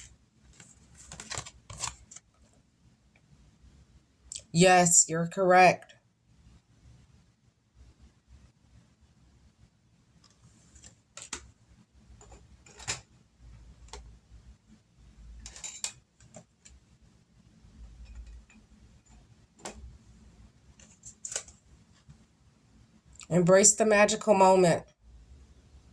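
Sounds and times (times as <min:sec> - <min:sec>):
cards being shuffled: 0:00.0 - 0:02.3.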